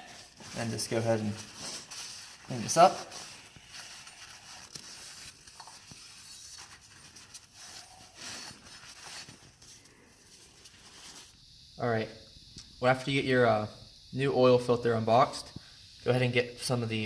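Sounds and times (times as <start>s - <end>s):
faint rustling: 0.0s - 11.4s.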